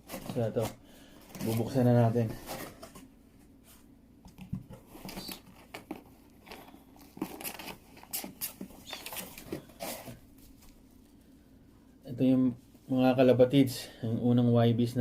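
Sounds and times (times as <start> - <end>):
packaging crinkling and tearing: 4.9 - 10.2.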